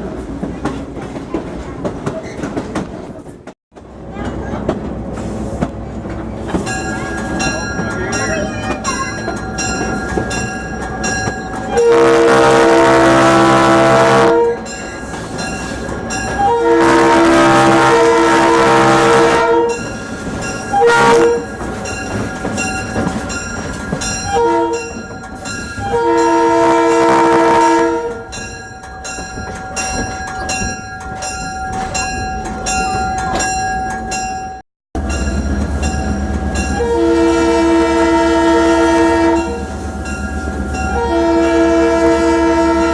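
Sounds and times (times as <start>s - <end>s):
train rumble and rail noise: 0.0s - 42.9s
train air horn blasts: 11.7s - 14.7s, 16.4s - 19.9s, 20.7s - 21.6s, 24.3s - 24.9s, 25.8s - 28.3s, 36.7s - 39.8s, 40.9s - 42.9s.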